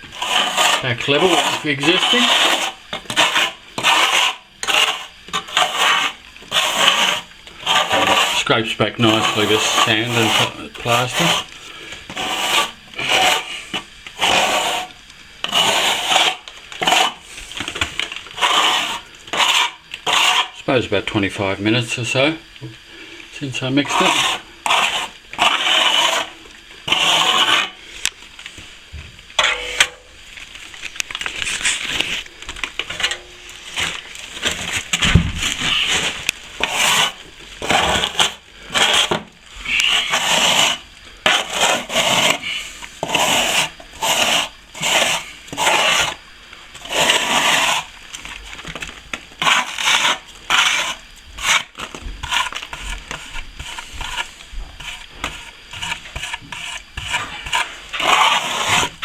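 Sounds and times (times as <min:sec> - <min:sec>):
scraper rasping across plaster: 0:00.0 - 0:17.6, 0:18.3 - 0:20.6, 0:23.8 - 0:27.8, 0:35.6 - 0:46.2, 0:46.8 - 0:47.9, 0:49.4 - 0:59.0.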